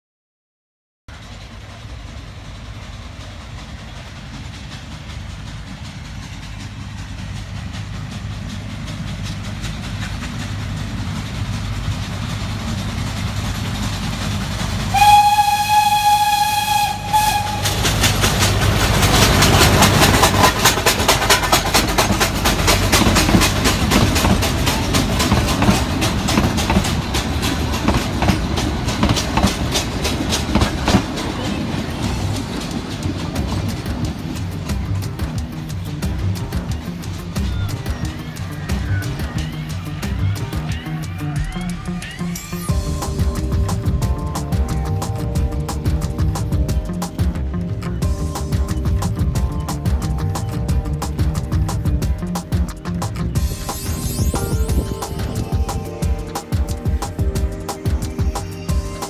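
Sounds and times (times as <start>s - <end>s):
steam train rumbling: 1.1s - 59.0s
train clattering past: 1.1s - 59.0s
train whistle: 14.2s - 32.1s.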